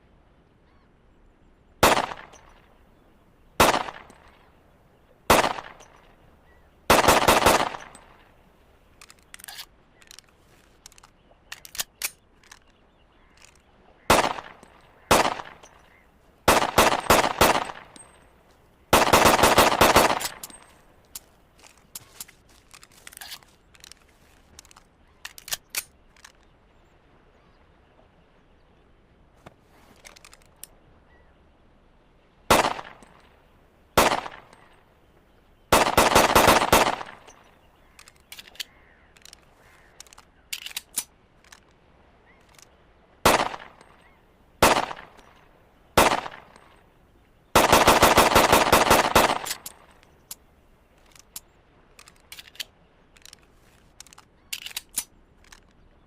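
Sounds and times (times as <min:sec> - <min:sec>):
pistol shots: 0:01.8 - 0:02.4, 0:03.6 - 0:04.1, 0:05.3 - 0:05.8, 0:06.9 - 0:08.0, 0:14.1 - 0:15.7, 0:16.5 - 0:18.0, 0:18.9 - 0:20.6, 0:32.5 - 0:33.0, 0:34.0 - 0:34.5, 0:35.7 - 0:37.3, 0:43.3 - 0:43.8, 0:44.6 - 0:45.3, 0:46.0 - 0:46.6, 0:47.6 - 0:49.8
faint small clicks: 0:07.7 - 0:13.7, 0:20.1 - 0:26.6, 0:29.4 - 0:30.8, 0:37.0 - 0:42.7, 0:49.2 - 0:56.0.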